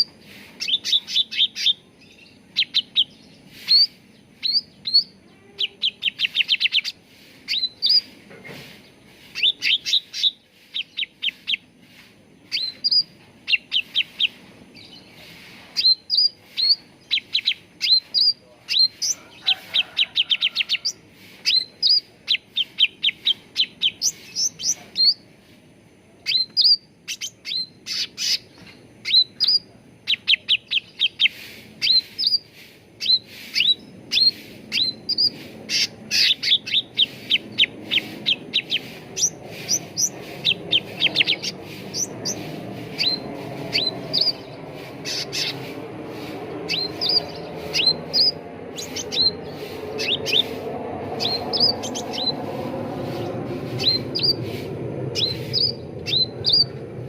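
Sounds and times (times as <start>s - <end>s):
songbird chirping: 0.0s - 57.0s.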